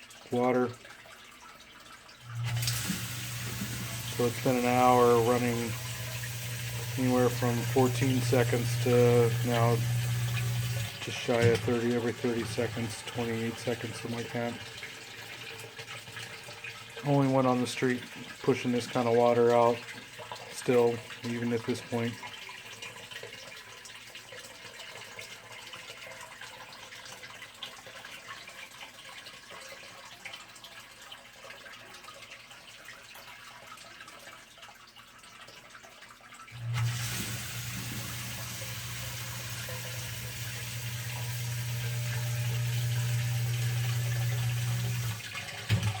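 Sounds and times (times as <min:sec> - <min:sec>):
water trickling: 0:00.0 - 0:46.0
sump pump motor hum: 0:02.3 - 0:15.5, 0:36.5 - 0:46.0
water rushing: 0:02.4 - 0:14.6, 0:36.6 - 0:46.0.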